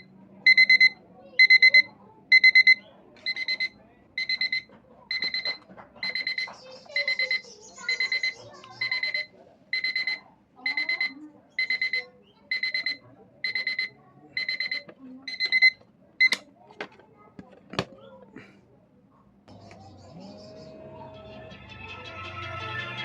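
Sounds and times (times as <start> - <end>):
phone alarm beeping: 0.0 - 16.4.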